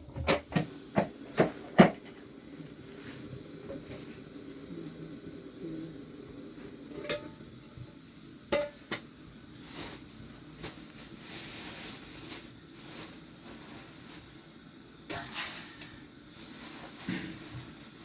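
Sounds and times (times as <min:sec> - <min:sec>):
soft hissy handling rustle: 0:01.0 - 0:05.9, 0:08.9 - 0:18.0
pots and utensils clinking: 0:06.9 - 0:07.5, 0:08.5 - 0:09.1, 0:15.1 - 0:18.0.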